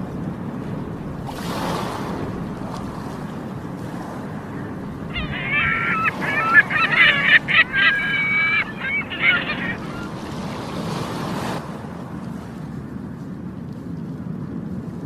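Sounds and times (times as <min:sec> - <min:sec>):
sea waves washing: 0:00.2 - 0:12.9
seagulls calling: 0:04.4 - 0:10.6.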